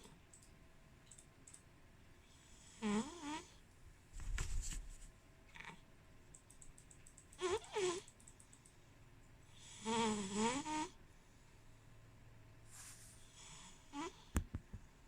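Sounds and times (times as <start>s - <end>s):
cat snoring: 2.3s - 3.6s, 7.4s - 8.1s, 9.5s - 11.0s, 13.2s - 14.3s.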